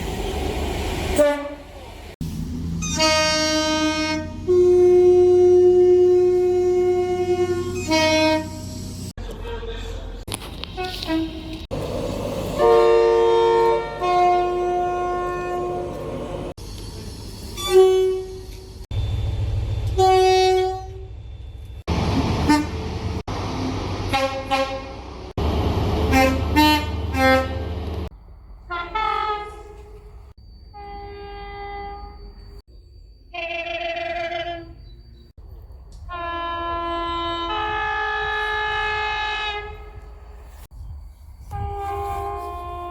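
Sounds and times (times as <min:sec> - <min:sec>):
train horns sounding: 0:01.1 - 0:01.8, 0:02.8 - 0:09.7, 0:10.8 - 0:11.7, 0:12.5 - 0:16.5, 0:17.6 - 0:18.7, 0:19.8 - 0:21.2, 0:22.4 - 0:23.0, 0:24.1 - 0:25.2, 0:26.0 - 0:27.9, 0:28.7 - 0:30.1, 0:30.7 - 0:32.5, 0:36.0 - 0:40.5, 0:41.5 - 0:42.9.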